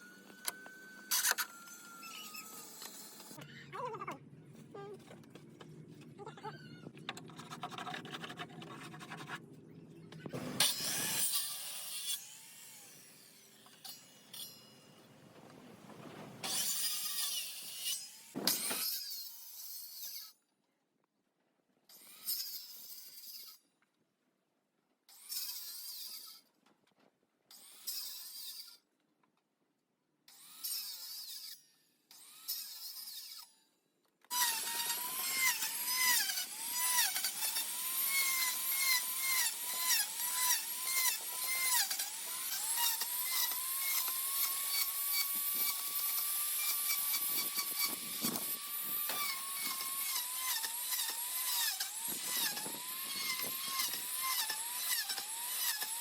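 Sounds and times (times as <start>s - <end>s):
power tool motor whine: 0.0s - 3.4s, 10.3s - 14.5s, 34.3s - 56.0s.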